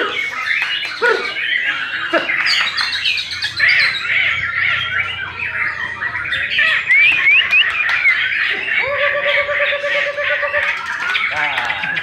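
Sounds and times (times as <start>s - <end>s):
birds singing: 0.0s - 12.0s
rising whistled bird notes: 2.5s - 11.1s.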